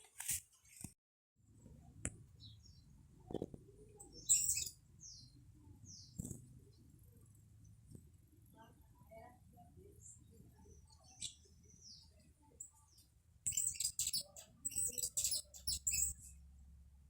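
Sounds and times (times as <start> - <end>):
birds chirping: 4.0 - 6.8, 10.3 - 16.3.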